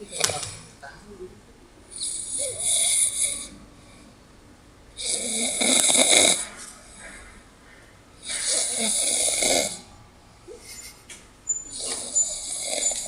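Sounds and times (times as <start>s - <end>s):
person snoring heavily: 5.0s - 7.3s, 8.2s - 9.9s, 11.7s - 13.0s.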